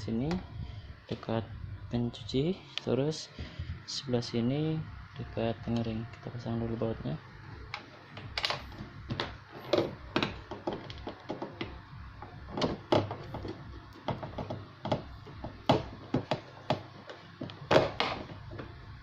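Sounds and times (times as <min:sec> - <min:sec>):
tool clicking and knocking on cover: 0:07.7 - 0:11.8, 0:12.5 - 0:18.7.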